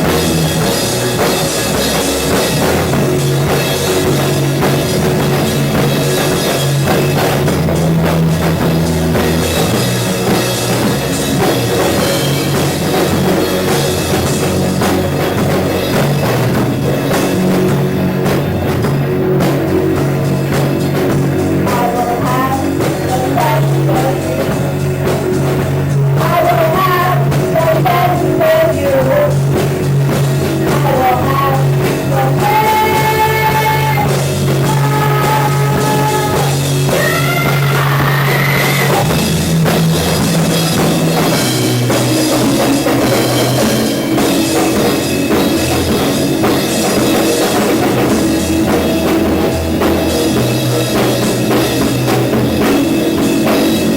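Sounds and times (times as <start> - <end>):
band playing loud rock music: 0.0 - 53.9.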